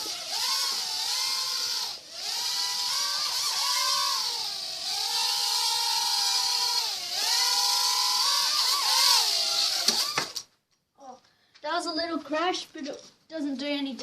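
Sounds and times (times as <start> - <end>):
toy quadcopter whining: 0.0 - 10.4.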